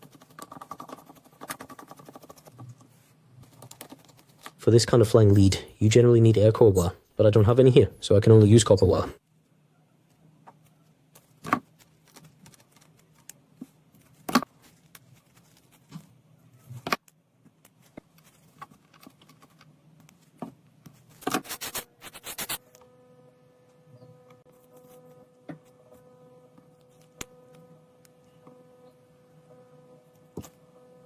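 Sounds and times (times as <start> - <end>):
electrical hum: 0.0 - 31.0.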